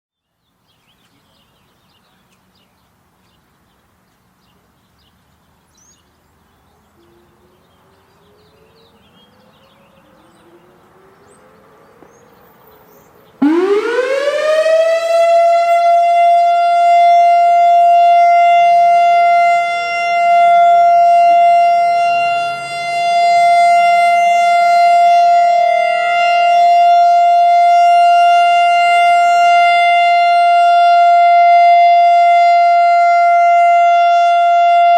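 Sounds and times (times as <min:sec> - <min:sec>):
electronic warning siren: 0:13.4 - 0:34.9.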